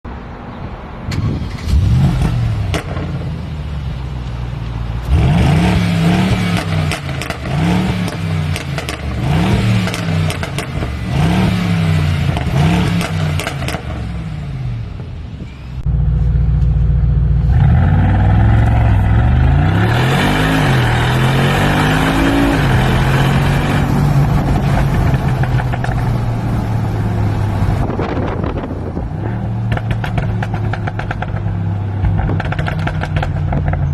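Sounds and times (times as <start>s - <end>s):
car engine revving: 5.0s - 15.1s, 17.3s - 33.9s
exhaust crackles and pops: 6.4s - 10.9s, 23.8s - 26.7s, 27.8s - 33.9s.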